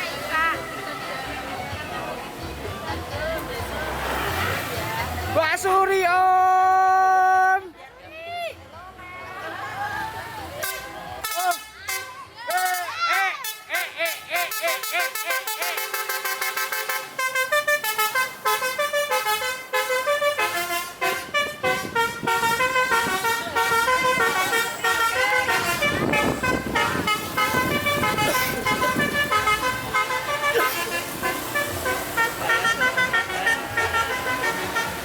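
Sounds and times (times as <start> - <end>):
vehicle musical horn playing a tune: 10.6 - 35.0.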